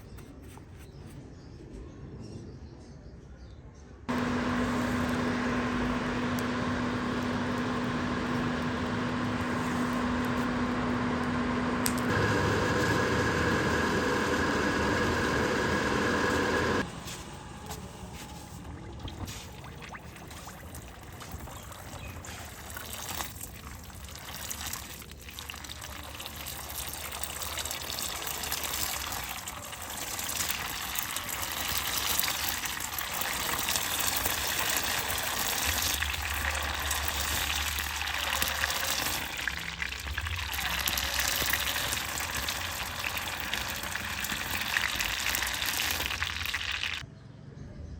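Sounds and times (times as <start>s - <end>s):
motor hum: 4.1s - 47.0s
hot steel sizzling in water: 19.0s - 47.0s.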